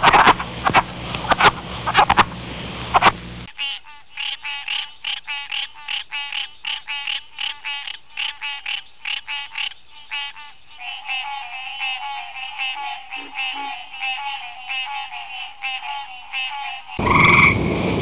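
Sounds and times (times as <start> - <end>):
frog calling: 2.9 - 17.6
frog chorus: 3.5 - 17.6.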